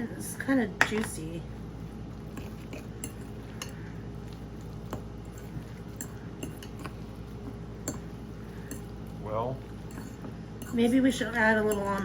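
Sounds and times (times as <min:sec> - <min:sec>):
wet mixture being stirred: 0:01.6 - 0:12.0
metal utensil scraping a bowl: 0:09.8 - 0:12.0.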